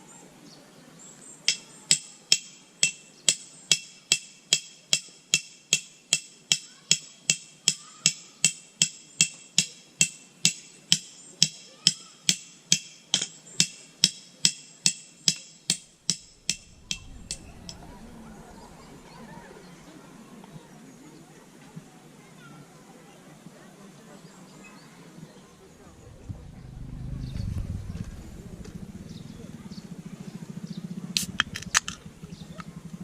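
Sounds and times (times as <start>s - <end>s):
hammer blows on metal: 1.5s - 17.8s
low rustling noise: 15.9s - 22.0s, 25.5s - 30.2s.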